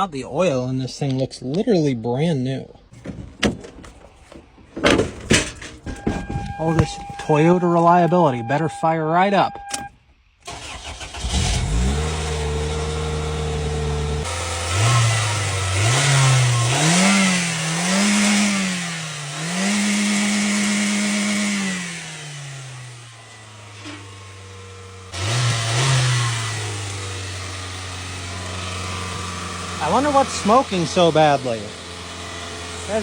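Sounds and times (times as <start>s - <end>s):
car engine starting and revving: 9.6s - 33.0s.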